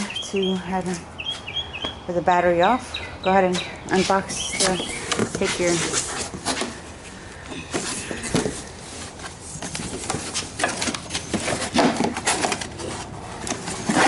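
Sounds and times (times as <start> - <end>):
packaging rustling and scraping: 4.0 - 14.0.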